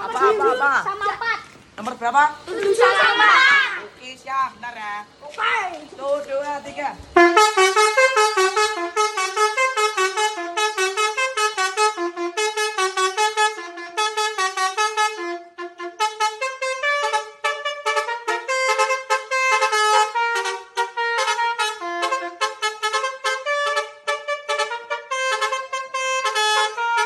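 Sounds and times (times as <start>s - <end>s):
multi-tone bus horn melody: 7.1s - 27.0s.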